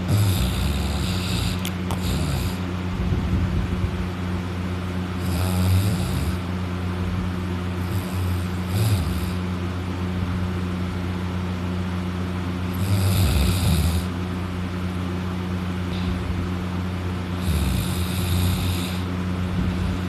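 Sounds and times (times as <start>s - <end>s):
man snoring loudly: 0.0s - 2.7s, 5.2s - 6.5s, 7.8s - 9.5s, 12.7s - 14.2s, 17.4s - 19.1s
steady low hum: 0.0s - 20.0s.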